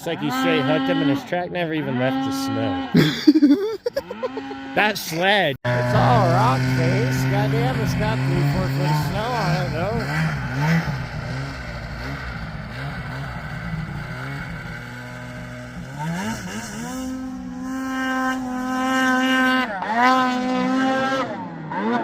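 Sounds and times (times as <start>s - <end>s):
snowmobile engine revving: 0.0s - 22.0s.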